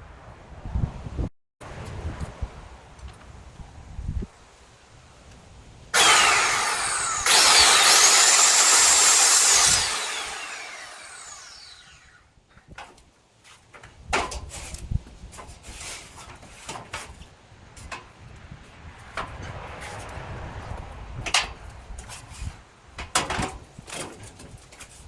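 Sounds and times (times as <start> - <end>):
circular saw cutting wood: 6.0 - 12.2.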